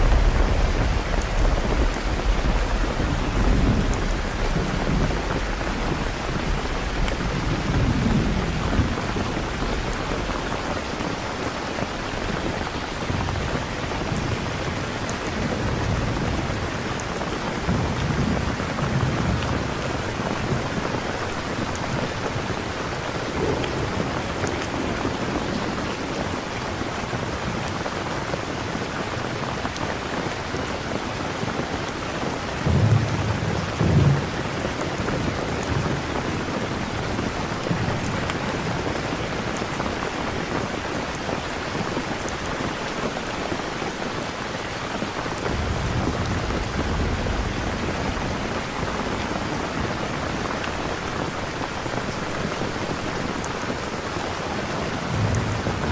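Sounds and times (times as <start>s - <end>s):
low rolling thunder: 0.0s - 27.7s, 32.5s - 39.4s, 45.3s - 53.8s, 54.6s - 55.9s
heavy rain: 0.0s - 55.9s.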